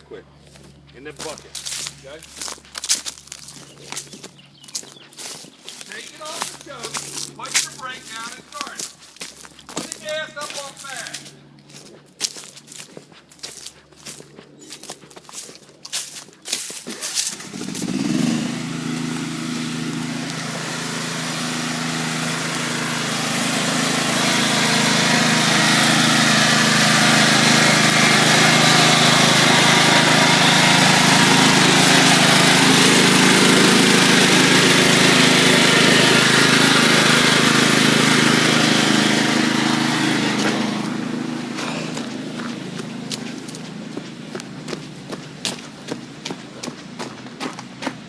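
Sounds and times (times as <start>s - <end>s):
lawn mower engine running: 0.0s - 48.0s.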